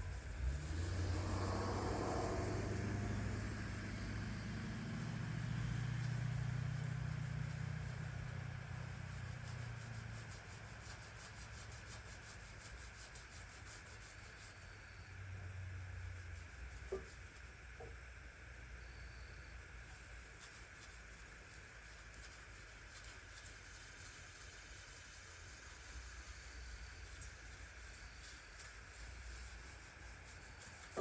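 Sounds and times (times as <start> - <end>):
low motor hum: 0.0 - 11.5.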